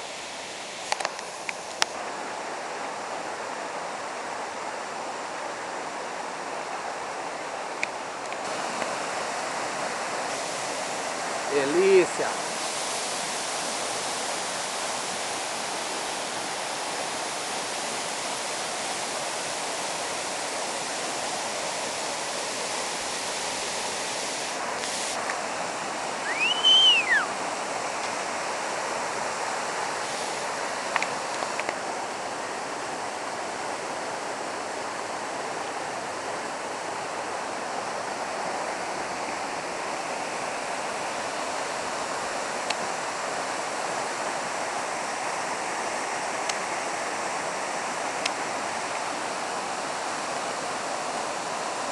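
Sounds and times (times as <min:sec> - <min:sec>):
waterfall rushing: 0:00.0 - 0:51.9
high whistle: 0:26.2 - 0:27.3.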